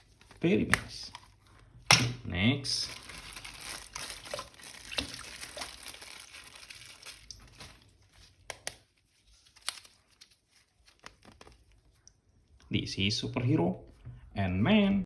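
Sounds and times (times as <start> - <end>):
plastic packaging crinkling: 2.7 - 12.0.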